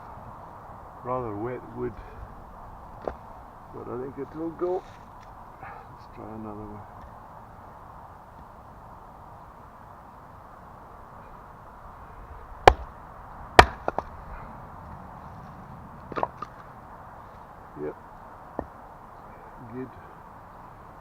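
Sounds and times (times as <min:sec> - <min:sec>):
axe chopping log: 0:03.0 - 0:03.2, 0:12.6 - 0:12.9, 0:13.5 - 0:14.2, 0:16.1 - 0:16.6, 0:18.5 - 0:18.8.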